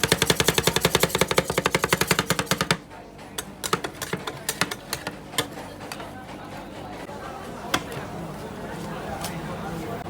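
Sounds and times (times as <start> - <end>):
metal spatulas chopping on steel: 0.0 - 6.1.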